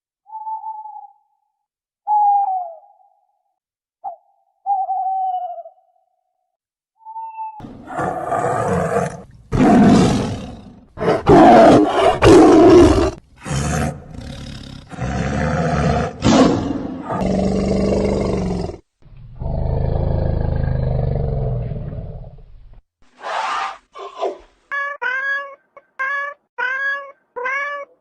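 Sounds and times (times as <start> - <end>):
lion roaring: 7.6 - 22.4.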